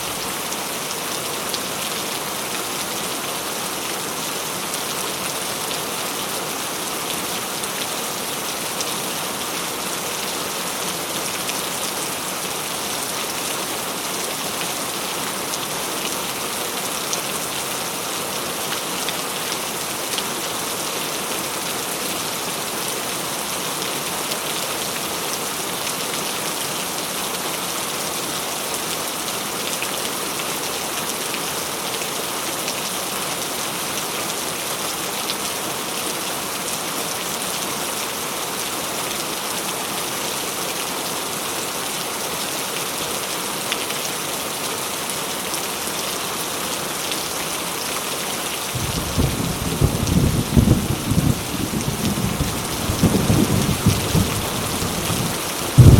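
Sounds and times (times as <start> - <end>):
heavy rain pouring: 0.0 - 55.9
thunder clap and rumble: 48.8 - 55.9.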